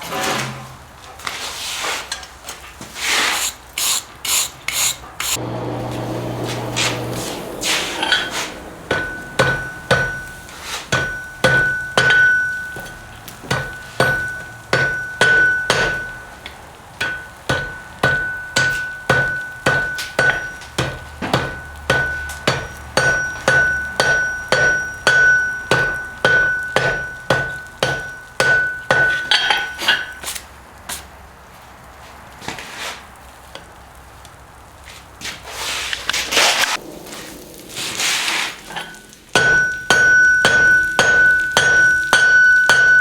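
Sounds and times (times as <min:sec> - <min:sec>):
anvil ringing: 0:05.8 - 0:30.2, 0:38.7 - 0:43.0
hammer striking steel on anvil: 0:06.0 - 0:30.2, 0:38.7 - 0:43.0.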